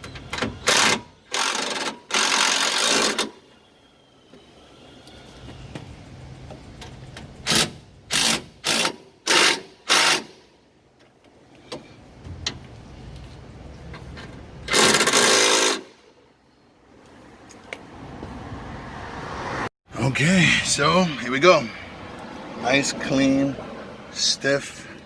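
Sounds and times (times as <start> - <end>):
power wrench bursts: 0.4 - 3.4, 7.4 - 10.4, 14.6 - 16.0.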